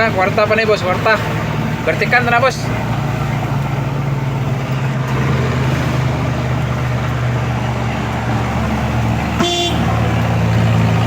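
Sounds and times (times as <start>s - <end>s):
engine running under load: 0.0s - 11.0s
road noise: 0.0s - 11.0s.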